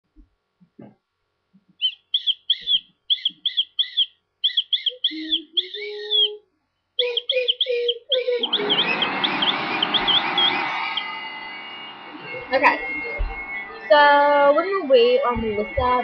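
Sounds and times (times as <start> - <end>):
small bird chirping: 1.8 - 6.4, 7.0 - 11.0
vacuum cleaner motor whine: 8.5 - 16.0.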